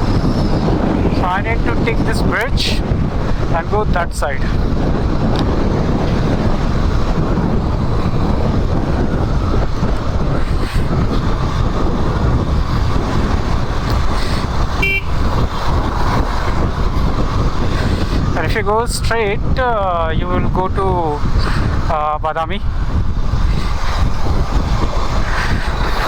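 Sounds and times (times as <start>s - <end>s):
wind and road noise: 0.0s - 26.0s
motorcycle engine: 4.4s - 18.4s
horn toot: 14.8s - 15.4s.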